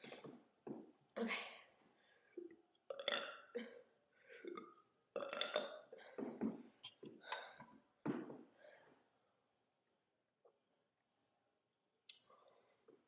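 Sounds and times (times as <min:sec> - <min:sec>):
woman burping: 0:02.9 - 0:04.6, 0:05.2 - 0:06.0.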